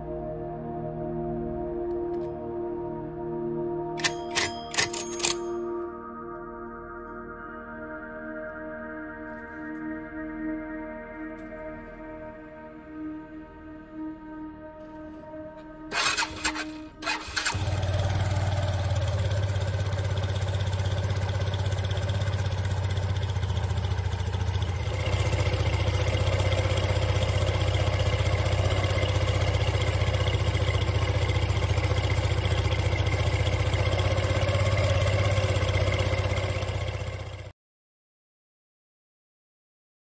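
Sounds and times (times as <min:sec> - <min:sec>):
scooter engine idling: 0:15.9 - 0:37.5.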